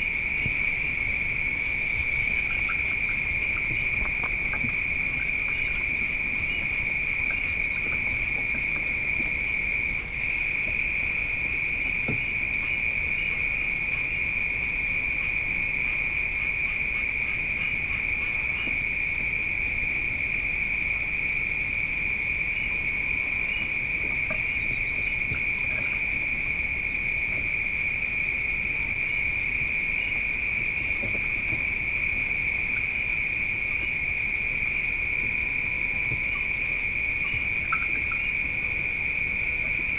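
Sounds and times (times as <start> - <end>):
crickets and insects trilling: 0.0 - 39.9.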